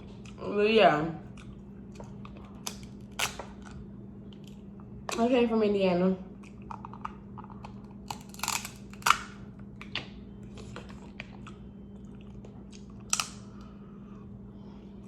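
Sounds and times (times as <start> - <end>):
chewing: 1.2 - 4.9, 6.4 - 9.2, 9.9 - 14.2
crab shells cracking: 1.4 - 5.2, 6.4 - 10.0, 12.7 - 13.6.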